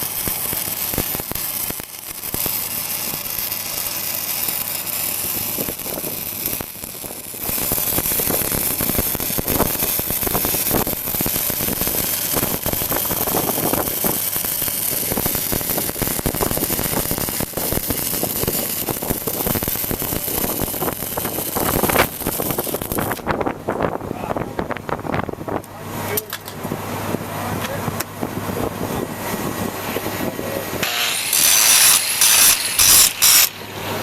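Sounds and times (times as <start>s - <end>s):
welding arc crackling hiss: 0.0s - 23.3s, 30.8s - 34.0s
engine running: 0.0s - 34.0s.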